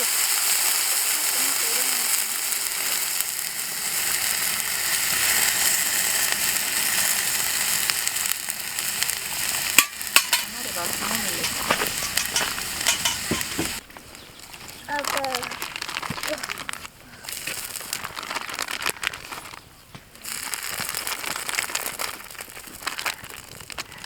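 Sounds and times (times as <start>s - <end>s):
food sizzling in a pan: 0.0s - 13.8s, 20.2s - 24.0s
sharp clicks and pops: 0.0s - 13.8s.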